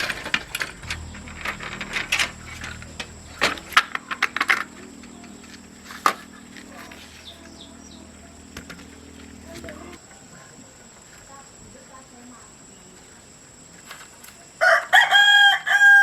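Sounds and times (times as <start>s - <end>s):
low steady hum: 0.0s - 10.1s.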